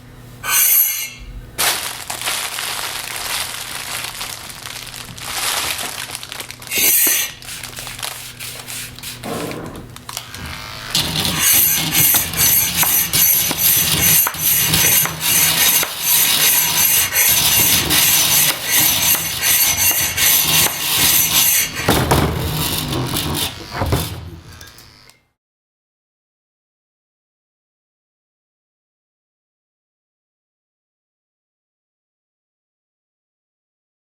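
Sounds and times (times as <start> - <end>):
rough scraping and rubbing: 5.2 - 10.0, 10.9 - 24.6.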